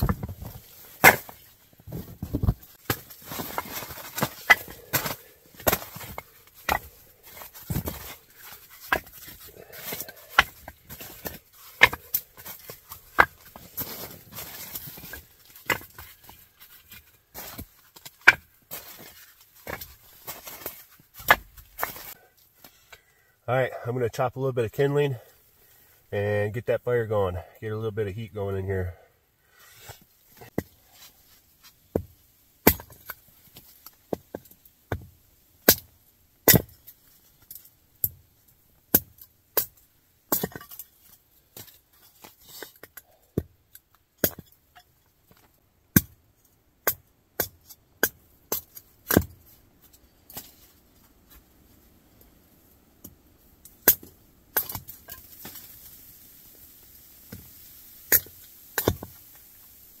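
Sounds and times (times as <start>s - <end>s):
blade chopping wood: 0.0s - 1.4s, 2.2s - 16.0s, 31.9s - 33.1s, 58.1s - 59.2s.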